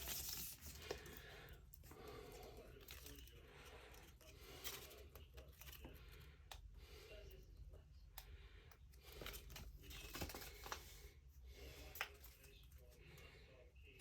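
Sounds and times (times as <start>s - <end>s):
paper and plastic rustling: 0.0s - 1.3s, 9.1s - 11.0s.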